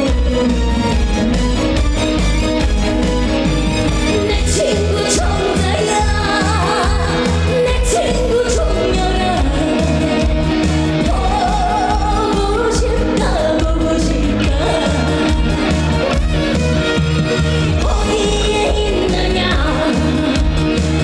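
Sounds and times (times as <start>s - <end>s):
band accompaniment with bass beat: 0.0s - 21.0s
woman singing with vibrato: 4.1s - 16.2s, 17.6s - 21.0s.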